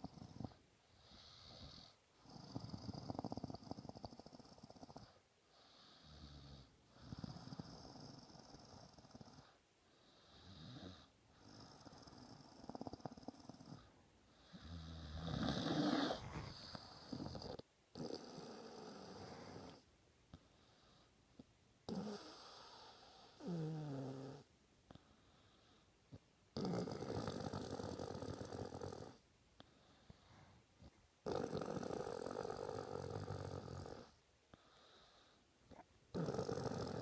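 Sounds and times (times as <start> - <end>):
person snoring: 10.2 - 19.8, 21.9 - 24.5, 26.6 - 29.2, 31.2 - 34.2, 35.7 - 37.0.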